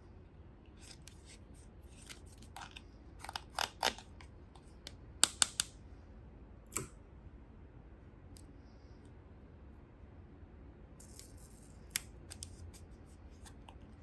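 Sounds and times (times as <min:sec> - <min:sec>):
small objects clicking and snapping: 0:05.2 - 0:05.7.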